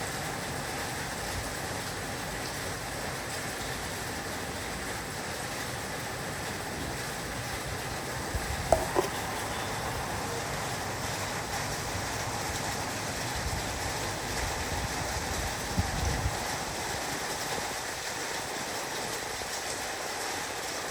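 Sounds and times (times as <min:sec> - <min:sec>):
heavy rain on a roof: 0:00.0 - 0:20.9
loud taps: 0:08.7 - 0:09.4.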